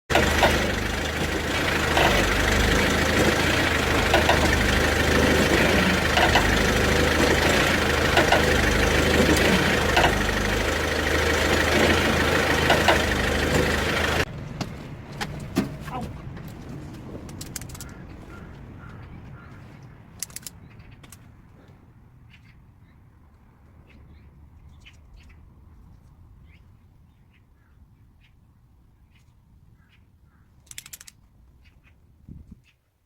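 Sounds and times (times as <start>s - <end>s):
diesel engine idling: 0.0s - 16.4s.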